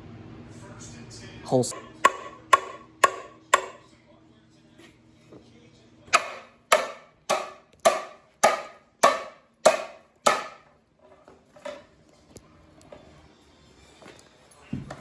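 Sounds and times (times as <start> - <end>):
hammer striking metal: 1.7 - 3.9, 6.1 - 10.7.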